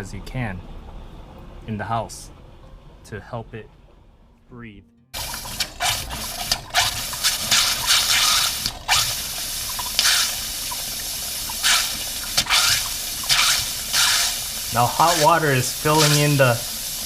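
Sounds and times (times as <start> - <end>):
faucet sputtering air and water: 5.2 - 17.0.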